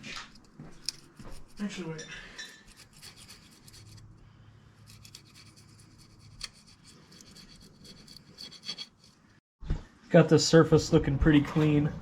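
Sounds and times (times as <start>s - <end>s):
scrubbing on metal surface: 0.0s - 4.2s, 4.8s - 9.4s.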